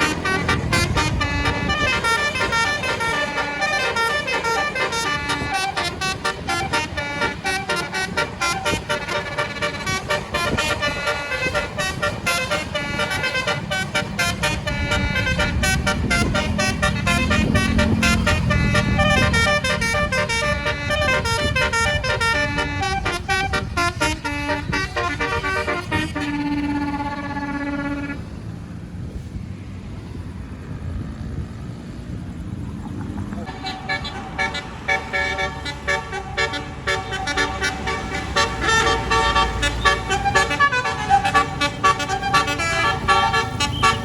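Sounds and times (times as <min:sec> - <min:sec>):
low held horn tone: 0:00.0 - 0:28.4
musical bus horn tune: 0:00.0 - 0:28.5, 0:33.5 - 0:44.0
bus engine rumble: 0:00.0 - 0:44.0.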